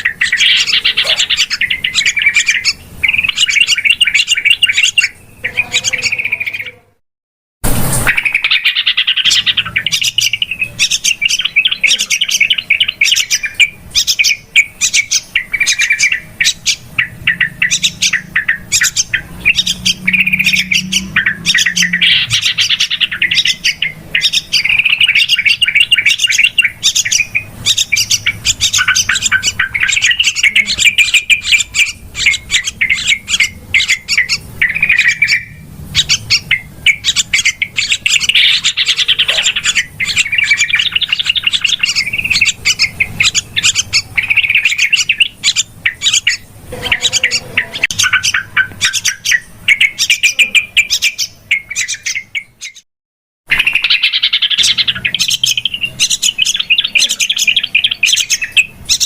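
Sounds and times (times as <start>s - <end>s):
bulbuls chattering: 0.0s - 7.0s, 8.0s - 52.8s, 53.5s - 59.0s.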